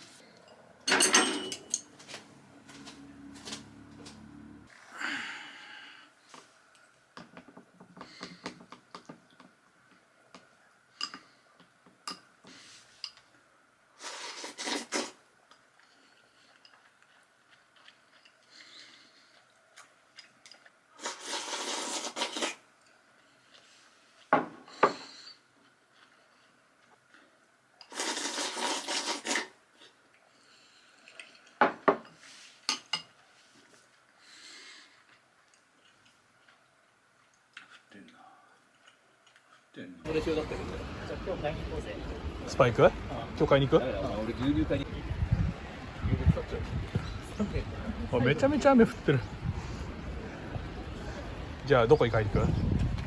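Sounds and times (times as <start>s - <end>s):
dishes and utensils clinking: 0.5s - 2.2s, 31.6s - 33.2s.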